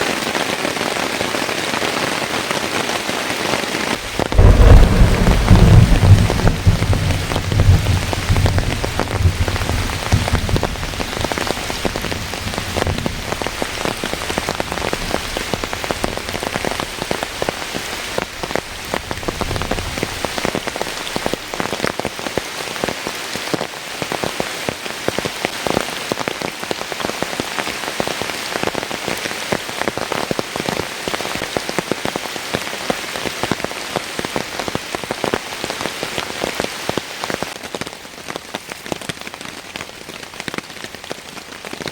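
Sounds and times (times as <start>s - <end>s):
heavy rain falling: 0.0s - 41.9s
low thunder rumble: 4.0s - 17.0s.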